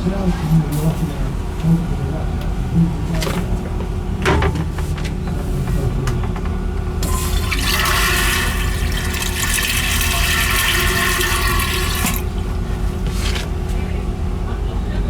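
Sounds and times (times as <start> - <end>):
constant low hum: 0.0 - 15.0
toilet flushing: 7.0 - 13.4.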